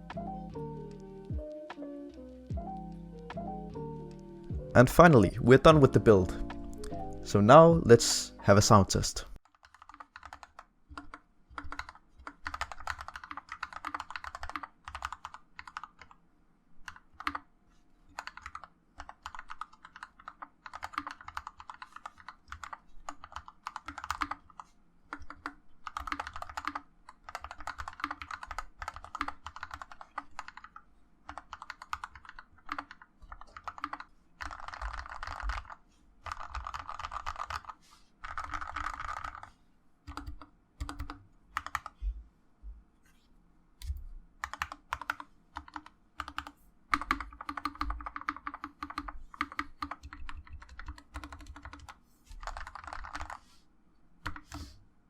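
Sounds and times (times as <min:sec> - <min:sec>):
mechanical keyboard typing: 0:09.4 - 0:16.2, 0:16.8 - 0:17.5, 0:18.1 - 0:39.5, 0:40.1 - 0:42.0, 0:43.8 - 0:53.4, 0:54.2 - 0:54.7.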